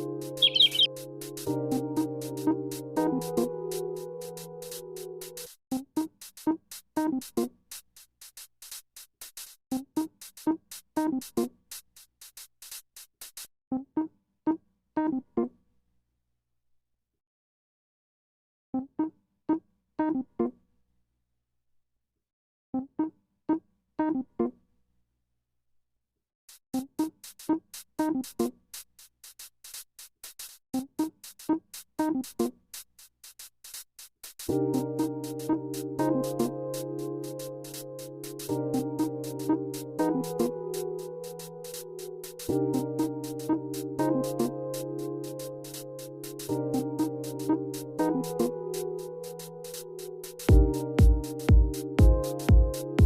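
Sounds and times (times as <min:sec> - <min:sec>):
fast ticking beat: 0:00.4 - 0:01.0, 0:04.3 - 0:13.5, 0:26.5 - 0:35.5, 0:41.2 - 0:43.5, 0:49.2 - 0:52.8.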